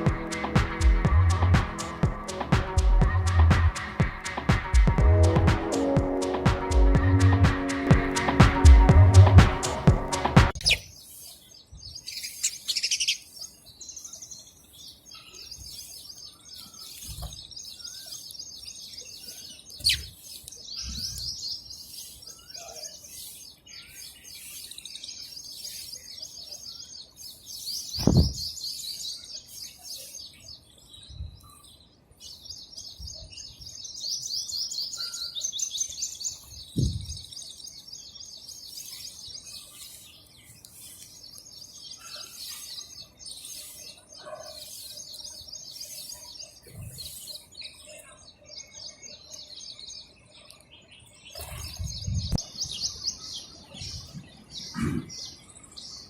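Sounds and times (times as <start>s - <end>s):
sparrows chirping: 0.0s - 56.0s
dull thumps: 28.0s - 28.4s.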